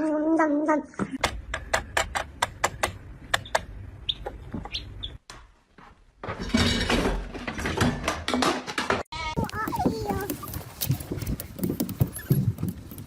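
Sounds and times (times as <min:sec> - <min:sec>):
small bird chirping: 0:03.4 - 0:05.2.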